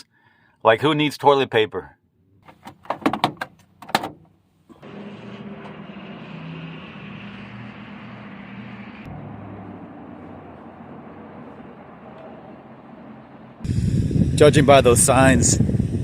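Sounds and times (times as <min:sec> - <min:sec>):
vehicle engine running: 0:04.7 - 0:14.5
road noise hiss: 0:04.8 - 0:16.0.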